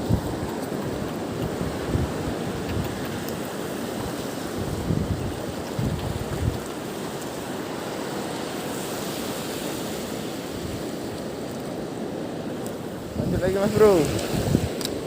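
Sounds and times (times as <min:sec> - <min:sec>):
wind buffeting microphone: 0:00.0 - 0:07.0, 0:12.9 - 0:15.0
steady wind: 0:00.0 - 0:15.0
water noise: 0:00.0 - 0:15.0.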